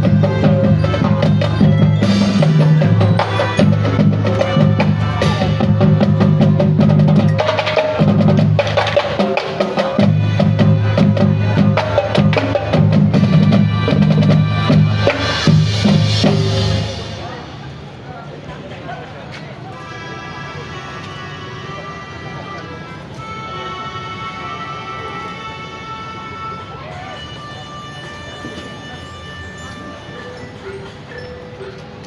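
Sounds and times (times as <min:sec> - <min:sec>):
snare and bass drums: 0:00.0 - 0:17.8
brass notes: 0:00.0 - 0:18.1, 0:19.8 - 0:31.0.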